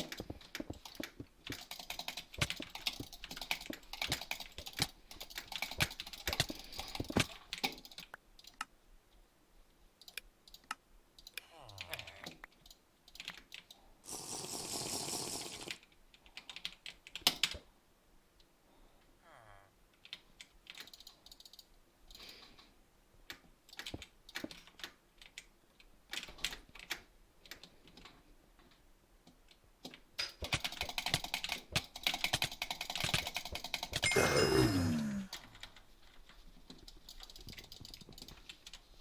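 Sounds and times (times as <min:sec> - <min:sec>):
rapid clicking: 0:30.4 - 0:34.0.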